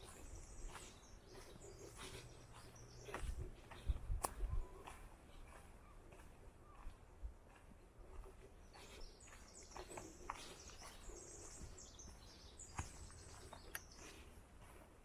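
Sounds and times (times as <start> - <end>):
soft footsteps: 0.0 - 15.0
songbird chirping: 0.0 - 15.0.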